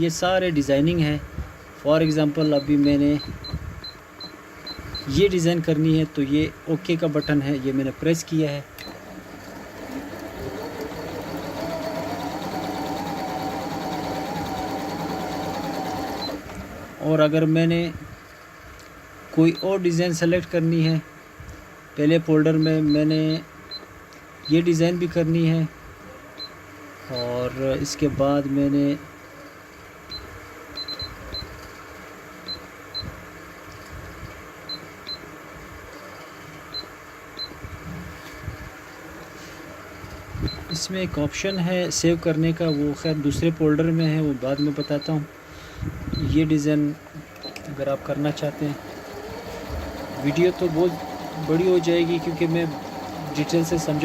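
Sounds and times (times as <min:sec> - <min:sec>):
sewing machine motor whine: 0:08.8 - 0:17.2, 0:47.0 - 0:54.0.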